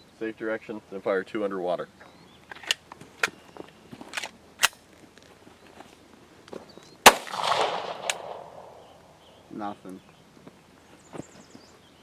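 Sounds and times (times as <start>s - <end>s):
gun handling clicks and knocks: 2.5s - 5.3s, 7.3s - 8.6s
pistol shot with ringing tail: 7.1s - 9.0s.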